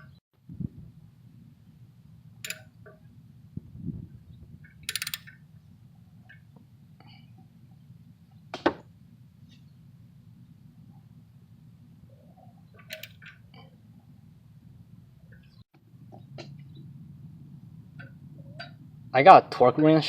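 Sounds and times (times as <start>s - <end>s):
hand tools clicking on metal: 2.4s - 2.7s, 4.8s - 5.4s, 12.8s - 13.4s.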